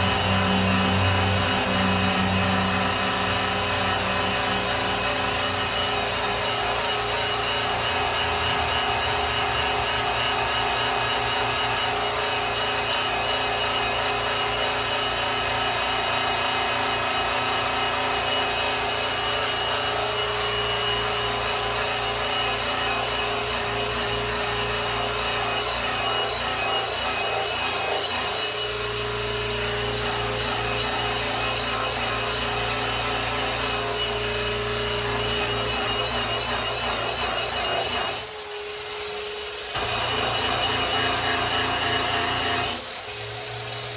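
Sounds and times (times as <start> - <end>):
electric polisher humming: 0.0 - 9.8, 29.6 - 43.9.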